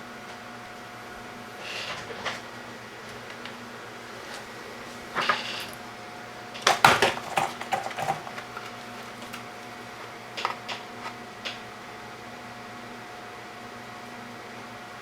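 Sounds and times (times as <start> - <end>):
small hard objects clattering: 6.6 - 9.5.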